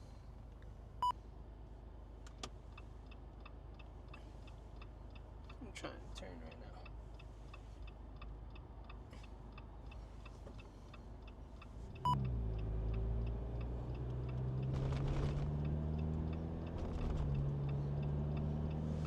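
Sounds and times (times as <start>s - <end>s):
car turn signal ticking: 2.3s - 5.6s, 6.5s - 14.7s, 15.5s - 19.0s
car engine revving: 12.1s - 19.0s.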